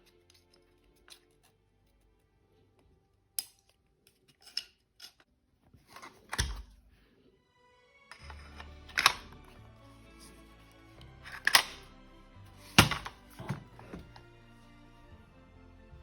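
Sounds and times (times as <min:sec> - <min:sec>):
metallic clicks of rifle parts: 0:03.4 - 0:05.3, 0:05.9 - 0:06.8, 0:08.2 - 0:09.5, 0:11.3 - 0:11.9.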